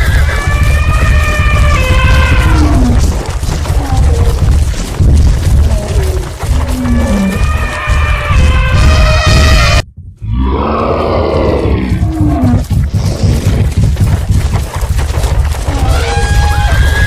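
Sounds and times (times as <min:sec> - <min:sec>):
elephant roar: 0:00.0 - 0:04.7, 0:05.4 - 0:13.7
rumble of pounding feet: 0:00.0 - 0:17.0.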